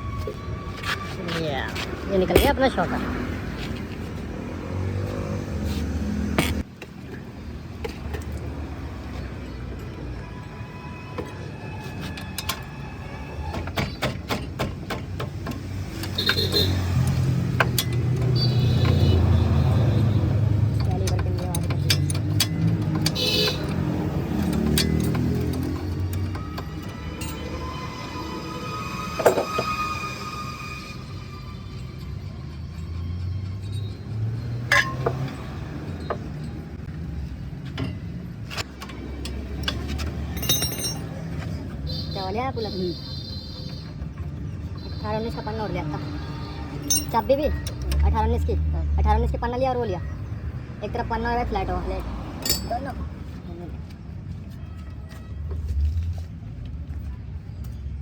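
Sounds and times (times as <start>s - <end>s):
metal tools clinking: 20.7s - 27.5s, 32.0s - 36.8s, 38.8s - 41.4s, 46.8s - 48.0s, 52.4s - 53.0s.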